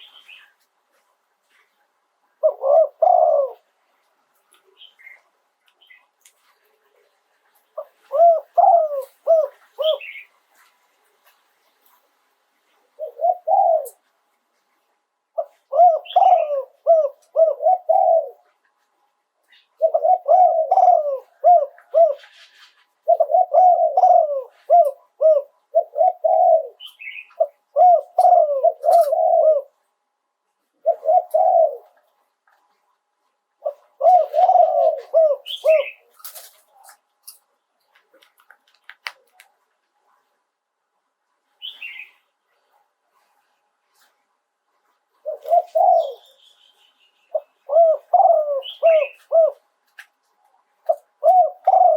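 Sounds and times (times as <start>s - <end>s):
dove cooing: 2.3s - 3.8s, 6.7s - 10.4s, 12.8s - 14.1s, 15.3s - 18.6s, 19.4s - 29.8s, 30.7s - 32.1s, 33.6s - 37.0s, 45.2s - 46.4s, 47.3s - 49.7s, 50.8s - 51.9s.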